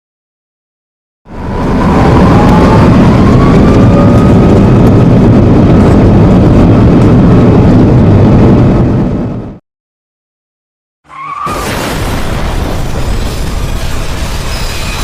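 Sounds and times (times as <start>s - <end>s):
jet engine roaring: 1.3s - 9.6s.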